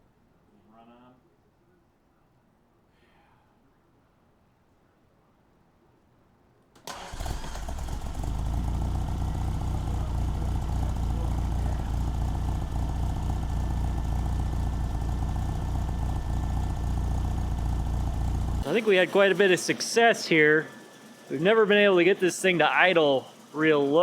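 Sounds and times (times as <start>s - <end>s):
car engine idling: 6.9s - 24.0s.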